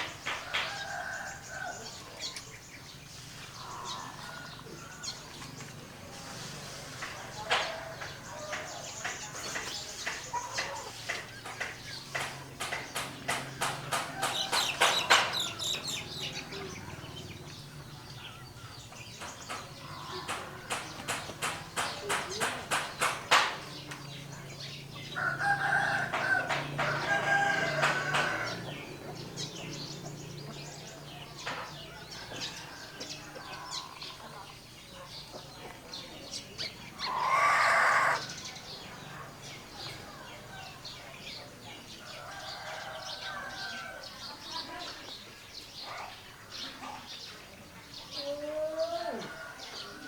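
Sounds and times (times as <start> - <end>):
rooster crowing: 25.1 - 28.8, 37.0 - 38.3.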